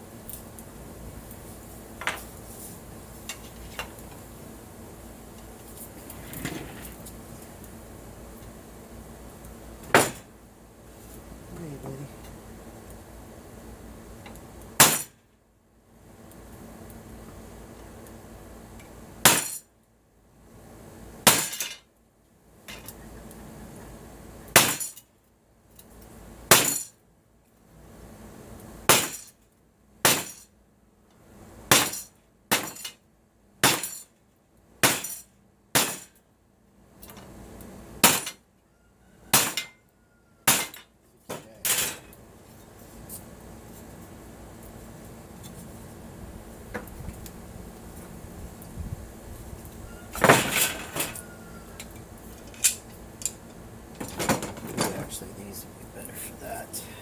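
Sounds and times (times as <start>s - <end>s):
hammer striking aluminum: 30.1s - 30.4s, 31.7s - 32.9s, 33.6s - 34.0s, 34.8s - 35.2s, 35.8s - 36.2s, 38.0s - 38.4s, 39.4s - 39.8s, 40.5s - 42.1s.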